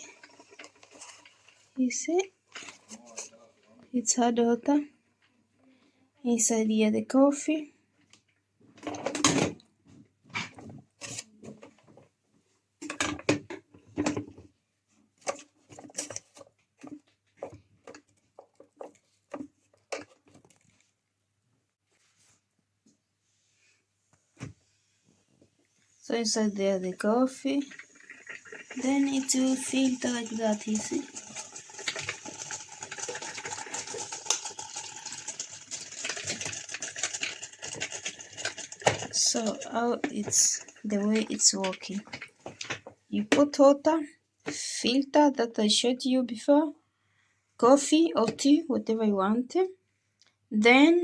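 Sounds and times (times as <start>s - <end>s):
coffee maker sputtering: 0.0s - 1.5s, 27.6s - 41.4s.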